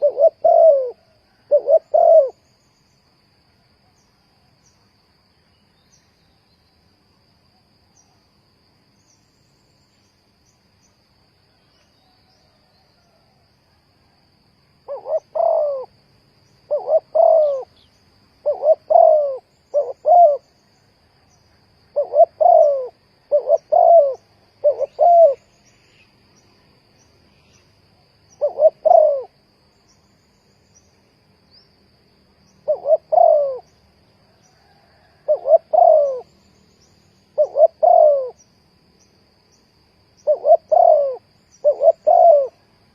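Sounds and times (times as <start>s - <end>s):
dove cooing: 0.0s - 2.4s, 14.9s - 15.9s, 16.7s - 20.5s, 22.0s - 25.5s, 28.3s - 29.4s, 32.6s - 33.8s, 34.6s - 36.4s, 37.3s - 38.4s, 40.2s - 42.6s.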